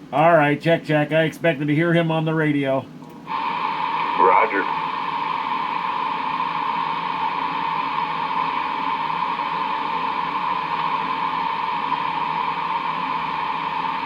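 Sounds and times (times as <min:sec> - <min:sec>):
radio static rushing: 0:03.4 - 0:05.0.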